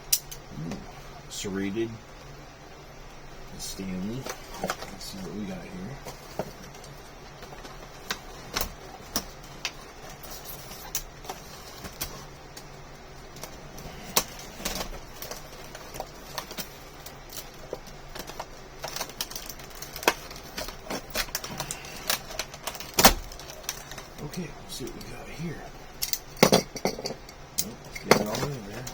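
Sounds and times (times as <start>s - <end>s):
plastic packaging snapping: 13.4s - 24.3s.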